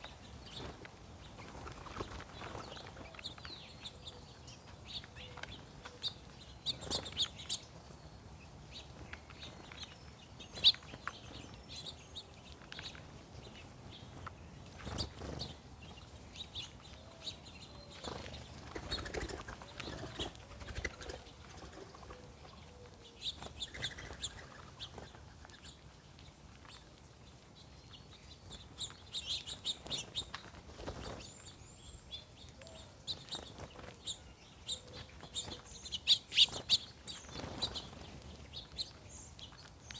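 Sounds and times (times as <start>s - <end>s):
songbirds chirping: 0.0s - 39.9s
wings flapping: 18.1s - 22.2s.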